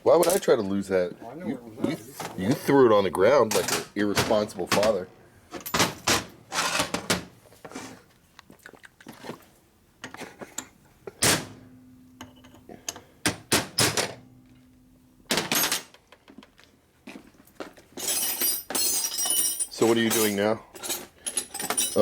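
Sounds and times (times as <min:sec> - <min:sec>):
faint steady hum: 0:00.0 - 0:22.0
metal tools clanking on workbench: 0:18.0 - 0:22.0.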